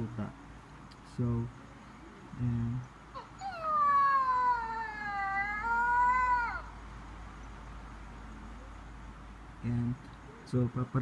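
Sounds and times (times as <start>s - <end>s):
puppy whining cry: 3.1s - 6.7s.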